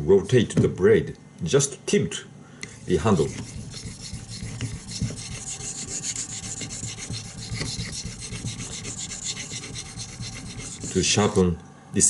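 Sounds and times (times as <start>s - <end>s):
knife blade scraping on whetstone: 2.8s - 11.4s.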